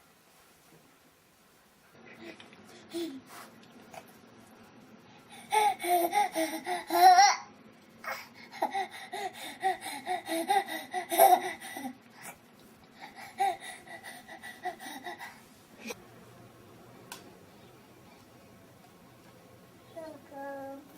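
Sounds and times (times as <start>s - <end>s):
baby giggling: 5.5s - 7.4s, 8.5s - 11.9s.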